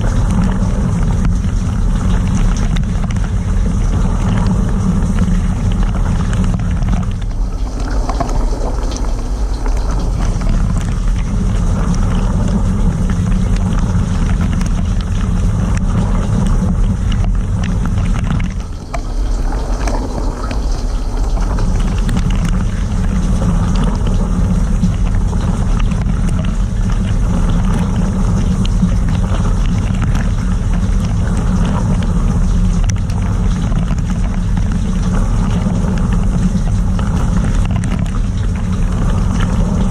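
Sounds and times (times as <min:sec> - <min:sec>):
low pump hum: 0:00.0 - 0:39.9
water spraying and splashing: 0:00.0 - 0:39.9.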